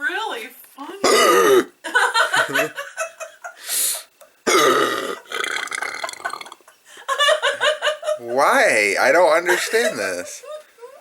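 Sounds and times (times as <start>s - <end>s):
man hiccuping and belching: 1.0s - 1.8s, 4.5s - 6.6s.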